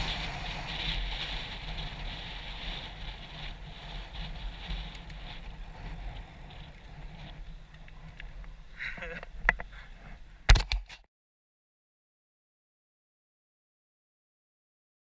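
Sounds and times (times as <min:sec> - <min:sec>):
bike tyres rumbling over dirt: 0:00.0 - 0:09.8
wind noise on microphone: 0:00.0 - 0:10.9.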